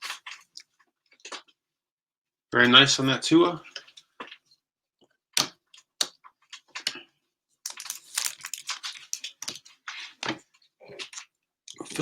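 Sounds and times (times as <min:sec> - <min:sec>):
cards rustling: 0:07.6 - 0:10.3.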